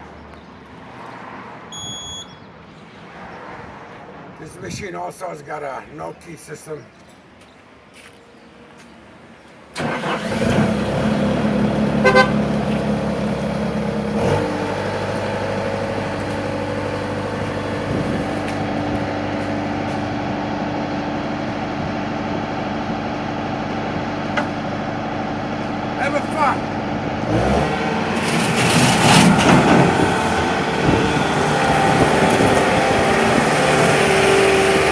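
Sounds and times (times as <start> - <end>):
short beep: 1.7 - 2.4
diesel engine starting and running: 9.6 - 34.9.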